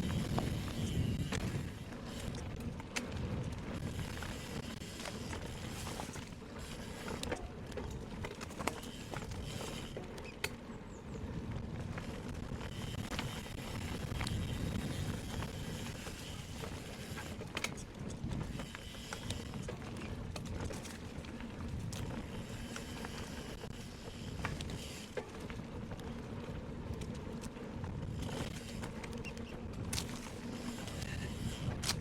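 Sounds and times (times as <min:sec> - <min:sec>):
bike clicks and rattles: 0:00.0 - 0:32.0
tyres rumbling on trail: 0:00.0 - 0:32.0
wind: 0:00.0 - 0:32.0.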